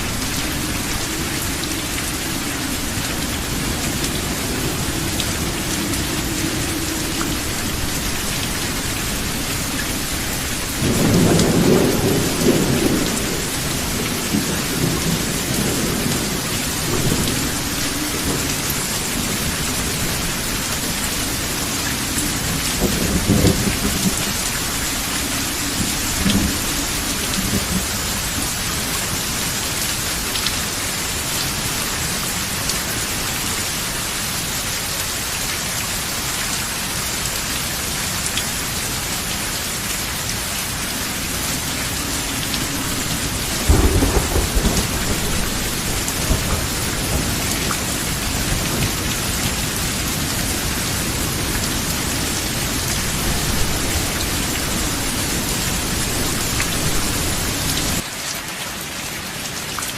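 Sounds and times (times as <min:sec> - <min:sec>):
low thunder rumble: 0:00.0 - 0:29.1, 0:40.9 - 0:58.0
rain hiss: 0:00.0 - 0:59.9.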